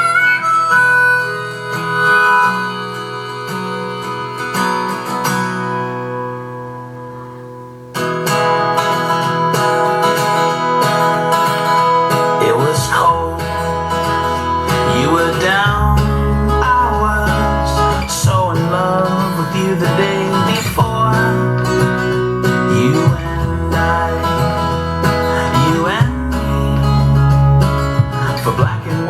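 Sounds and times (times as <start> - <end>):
acoustic guitar pop song: 0.0 - 29.0
deep bass: 12.5 - 29.0.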